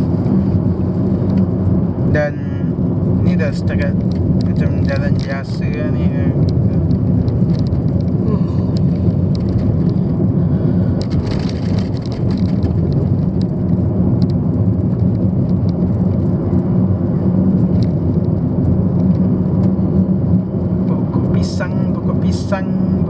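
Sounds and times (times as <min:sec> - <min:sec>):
car cabin road and engine noise: 0:00.0 - 0:23.0.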